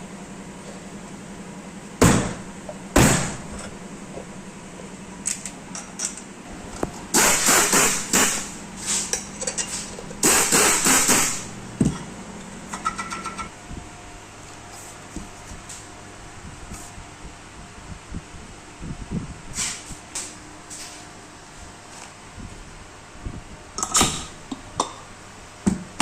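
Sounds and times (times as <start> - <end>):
steady low hum: 0.0 - 26.0
rattling and clattering parts: 5.3 - 12.1, 12.7 - 13.5.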